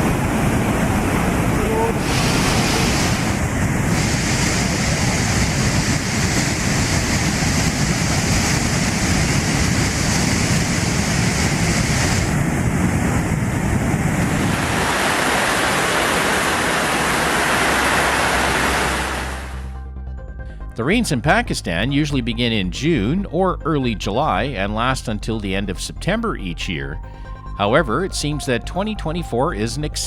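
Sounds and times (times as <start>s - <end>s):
rushing floodwater: 0.0s - 19.7s.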